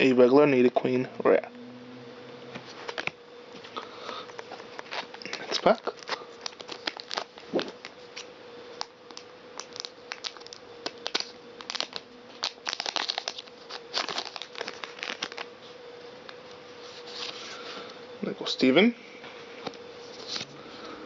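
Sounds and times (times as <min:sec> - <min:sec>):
faint steady hum: 0:00.0 - 0:21.0
wrapper crinkling: 0:04.2 - 0:15.6.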